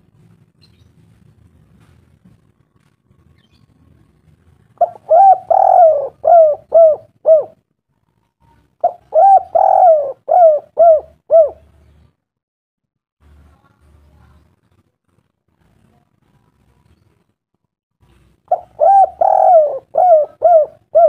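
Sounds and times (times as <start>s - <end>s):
bird calling: 4.8s - 7.5s, 8.8s - 11.7s, 18.5s - 21.0s.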